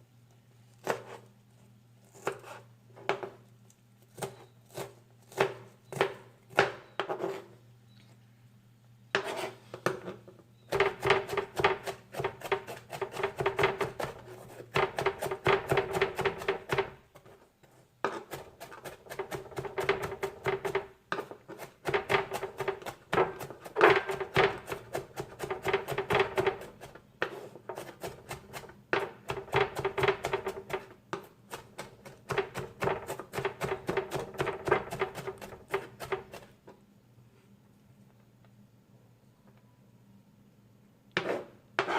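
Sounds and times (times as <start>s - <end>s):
knife chopping on cutting board: 0.8s - 1.2s.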